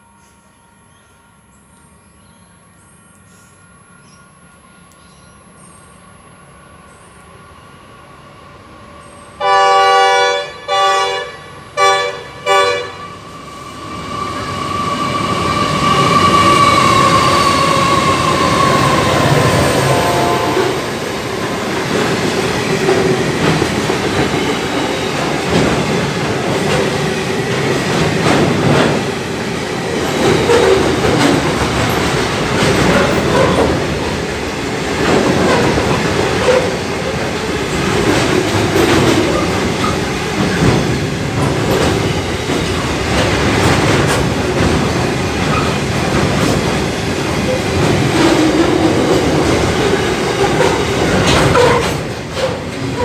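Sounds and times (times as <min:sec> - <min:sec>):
train wheels rumbling on rail: 0:05.8 - 0:53.0
clacks over rail joints: 0:21.8 - 0:29.2, 0:30.0 - 0:34.3, 0:34.9 - 0:53.0.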